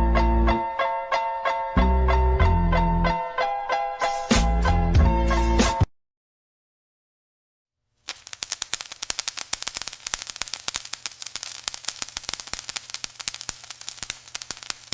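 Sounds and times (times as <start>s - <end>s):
arc welding crackling: 8.0s - 14.9s.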